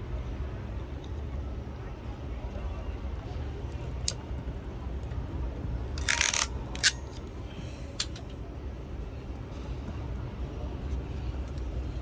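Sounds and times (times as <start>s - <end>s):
crimping tool clicks: 6.0s - 7.2s, 8.0s - 8.3s.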